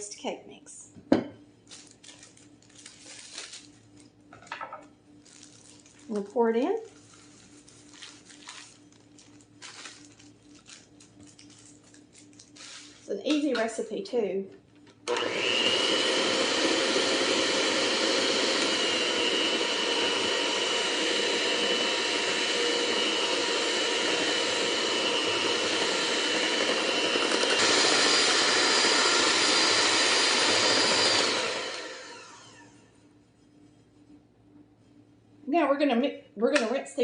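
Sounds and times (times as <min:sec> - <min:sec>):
electric hand mixer running: 0:15.0 - 0:32.9.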